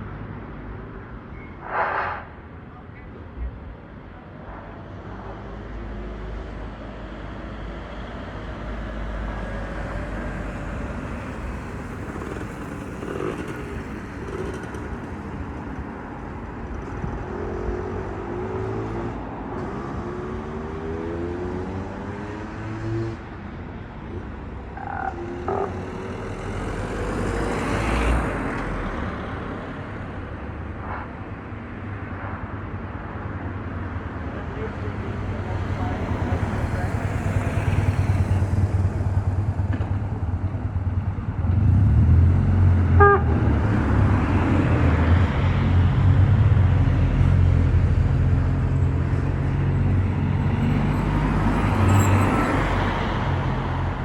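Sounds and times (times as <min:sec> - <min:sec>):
road traffic rumble: 0:00.0 - 0:54.0
vehicle engine accelerating: 0:35.3 - 0:54.0
vehicle passing by: 0:41.2 - 0:54.0.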